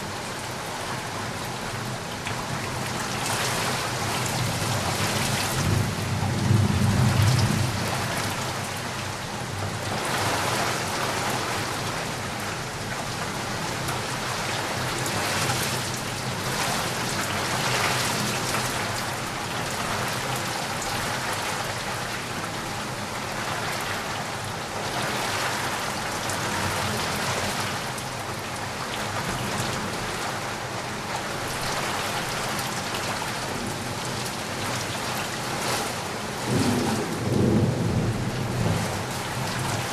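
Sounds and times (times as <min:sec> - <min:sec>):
heavy rain falling: 0:00.0 - 0:39.9
low rumble of thunder: 0:04.6 - 0:08.6, 0:36.3 - 0:39.9.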